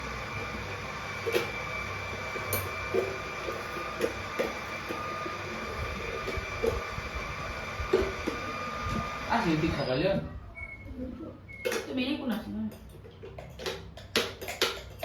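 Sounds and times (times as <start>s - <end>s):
electric juicer whining: 0.0s - 9.9s.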